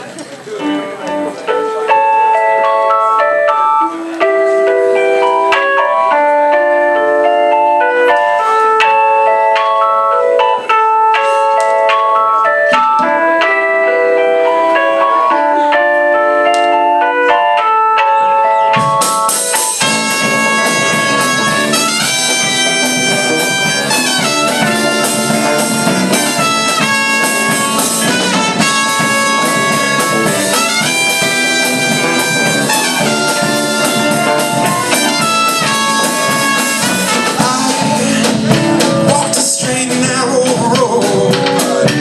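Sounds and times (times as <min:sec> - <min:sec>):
live band playing instrumental: 0:00.0 - 0:42.0
steady drum hits: 0:18.8 - 0:42.0.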